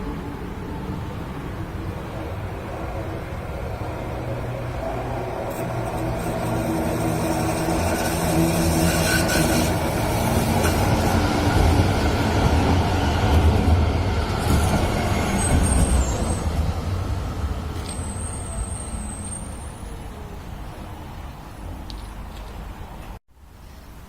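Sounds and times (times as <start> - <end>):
tram motor hum: 0.0 - 18.8
tram rumbling on rails: 0.0 - 23.2
high-pitched rail squeals: 4.9 - 12.2, 14.3 - 16.8, 17.7 - 20.3.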